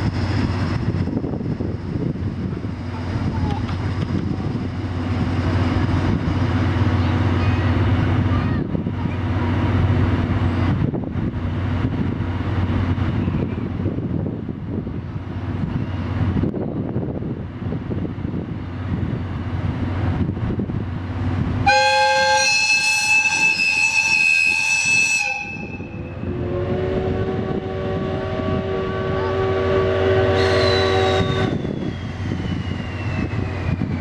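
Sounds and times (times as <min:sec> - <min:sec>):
train rumbling past: 0:00.0 - 0:34.0
locomotive air horn: 0:21.6 - 0:31.6
steam locomotive whistle: 0:21.6 - 0:33.6.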